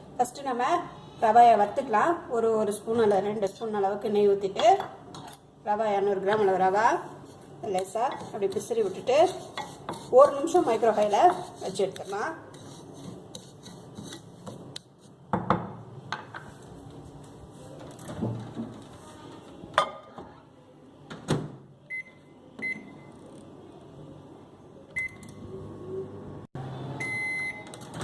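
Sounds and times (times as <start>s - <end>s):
microwave hum: 21.9s - 28.0s
short keypad beeps: 25.0s - 25.4s, 27.0s - 27.8s.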